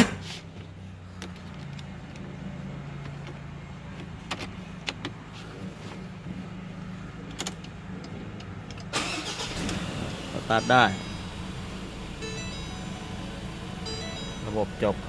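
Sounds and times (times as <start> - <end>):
sharp clicks inside car: 0.0 - 9.0
steady low hum: 9.4 - 15.0.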